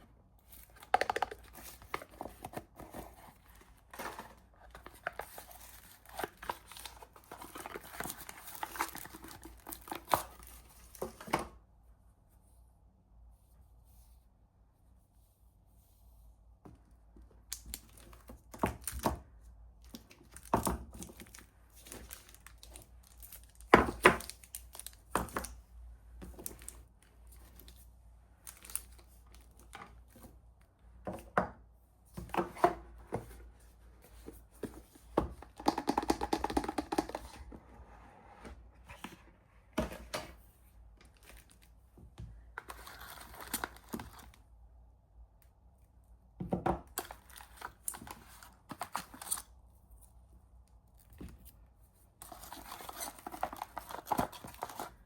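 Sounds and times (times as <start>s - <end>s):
wrappers crinkling and tearing: 20.2s - 25.1s.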